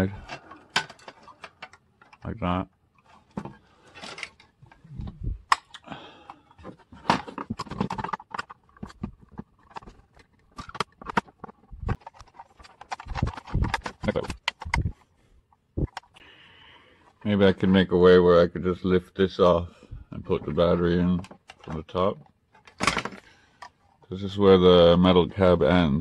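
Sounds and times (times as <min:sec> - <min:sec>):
plastic parts clicking and rattling: 0:00.0 - 0:16.2, 0:20.2 - 0:24.3.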